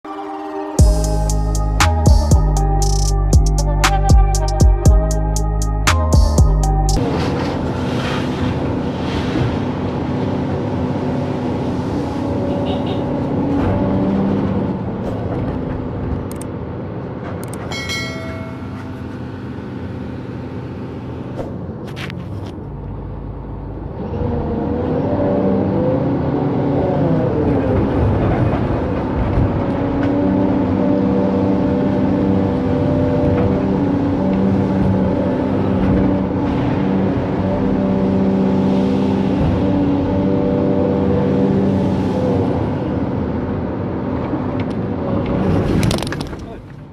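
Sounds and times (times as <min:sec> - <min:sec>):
excavator diesel engine running: 0:13.6 - 0:24.0.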